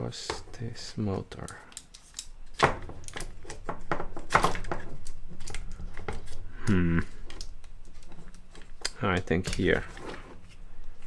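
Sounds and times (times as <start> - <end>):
plastic parts clicking and knocking: 0.2 - 6.5, 7.1 - 10.6
person humming: 6.6 - 7.2.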